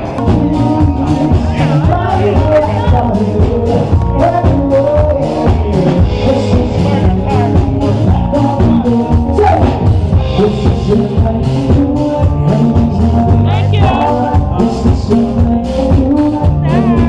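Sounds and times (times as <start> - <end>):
drum beat: 0.0 - 17.0
person singing: 0.0 - 17.0.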